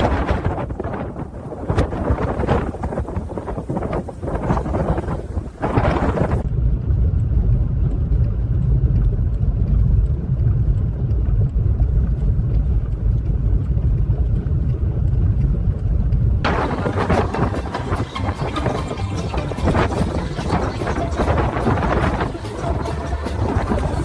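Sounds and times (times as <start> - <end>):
hissing wind noise: 0.0 - 6.5, 14.4 - 24.0
vehicle low rumble: 0.0 - 24.0.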